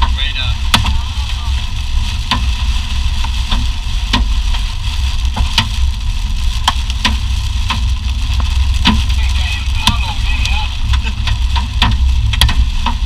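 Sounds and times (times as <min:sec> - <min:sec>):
vehicle road noise: 0:00.0 - 0:13.0.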